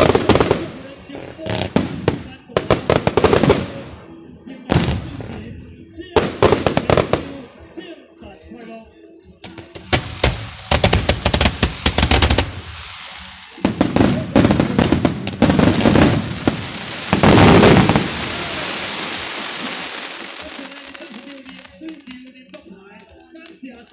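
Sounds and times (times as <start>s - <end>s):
fireworks crackling: 0.0s - 7.7s, 9.4s - 23.9s
fireworks hiss: 9.4s - 23.9s.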